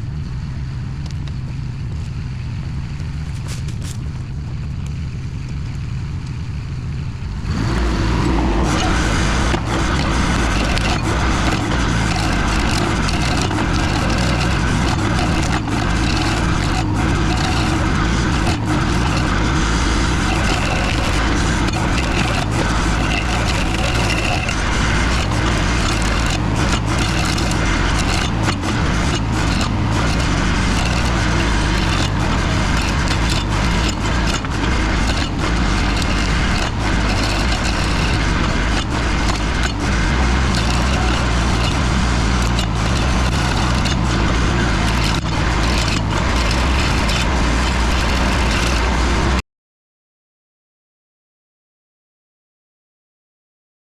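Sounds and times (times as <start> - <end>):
skid steer engine running: 0.0 - 49.4
stump grinder cutting stump: 3.2 - 4.1, 7.3 - 49.4.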